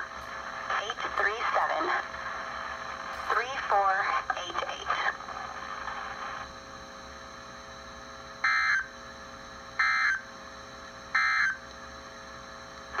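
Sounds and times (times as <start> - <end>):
radio hiss: 0.0 - 6.5.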